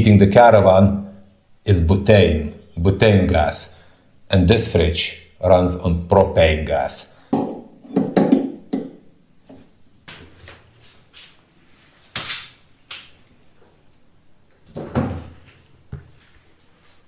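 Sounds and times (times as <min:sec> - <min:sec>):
knocks and scuffs handling fridge: 0:14.7 - 0:16.1.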